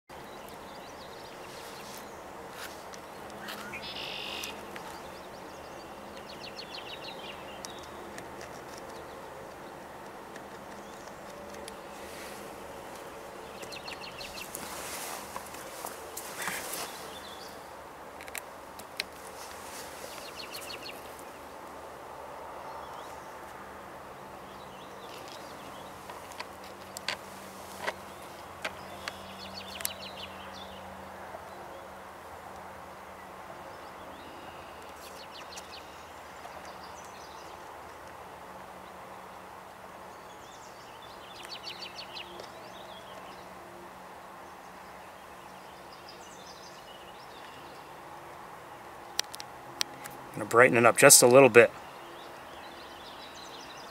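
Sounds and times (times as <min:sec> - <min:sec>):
wild birds singing: 0:00.1 - 0:53.9.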